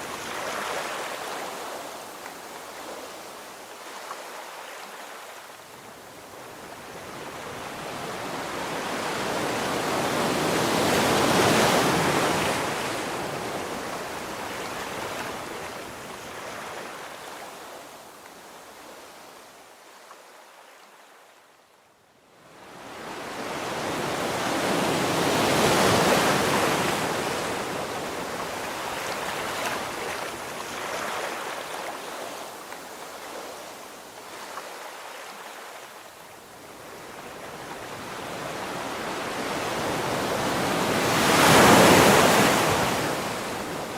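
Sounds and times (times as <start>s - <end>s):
waves surging: 0.0s - 5.2s, 37.7s - 43.9s.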